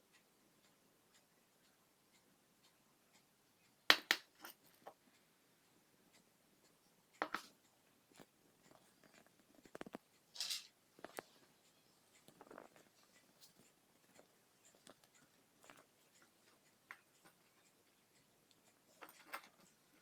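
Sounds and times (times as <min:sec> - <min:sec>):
handling clicks and taps: 0:03.9 - 0:05.0, 0:07.2 - 0:10.1.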